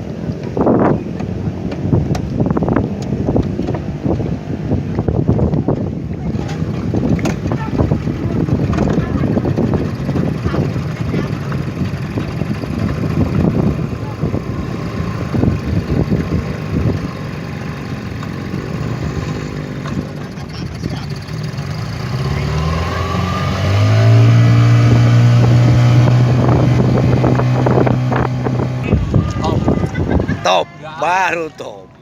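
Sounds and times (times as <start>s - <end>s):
choppy rushing noise: 3.8s - 23.6s, 24.3s - 31.5s
speedboat engine revving: 5.6s - 32.0s.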